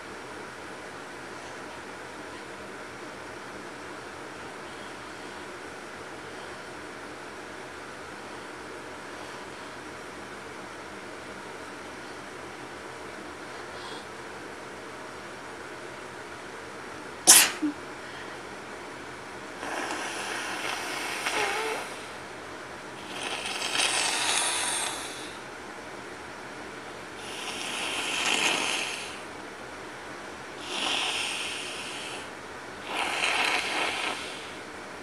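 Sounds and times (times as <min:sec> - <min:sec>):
person blowing nose: 0:17.3 - 0:17.8, 0:19.6 - 0:21.9.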